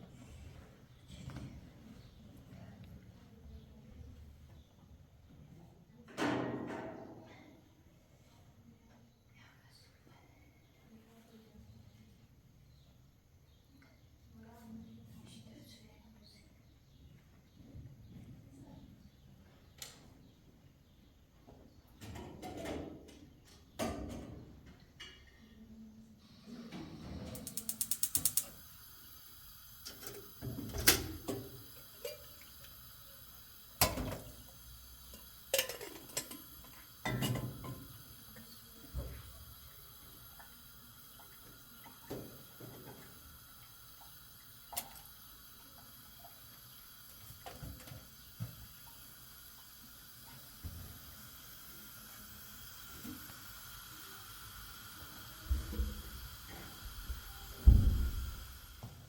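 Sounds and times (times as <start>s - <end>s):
quick clicks: 27.3s - 28.6s.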